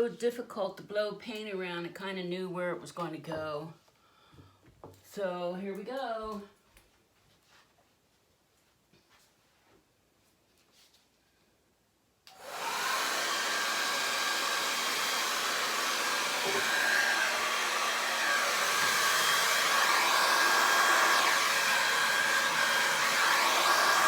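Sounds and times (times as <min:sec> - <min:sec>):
hair dryer blowing air: 0:12.3 - 0:24.0.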